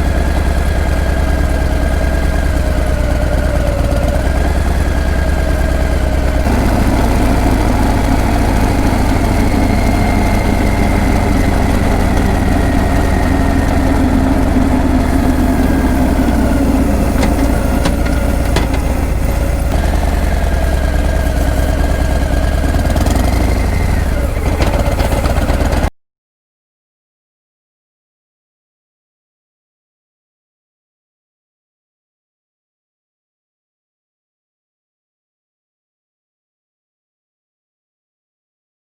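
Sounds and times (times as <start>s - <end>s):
motorcycle exhaust at low revs: 0.0s - 25.9s.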